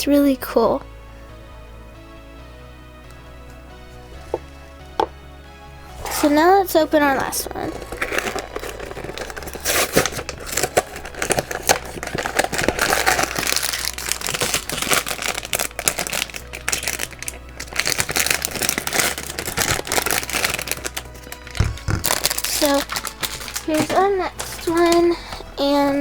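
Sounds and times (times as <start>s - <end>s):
plastic packaging crinkling: 5.9s - 26.0s.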